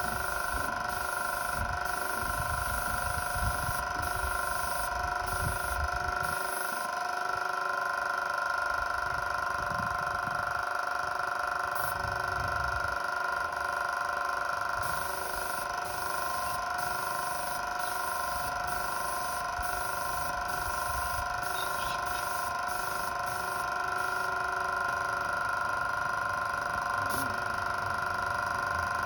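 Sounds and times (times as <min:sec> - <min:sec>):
pulsing spray hiss: 0:00.0 - 0:06.9, 0:14.8 - 0:24.4, 0:27.0 - 0:27.4
paint sprayer whine: 0:00.0 - 0:29.0.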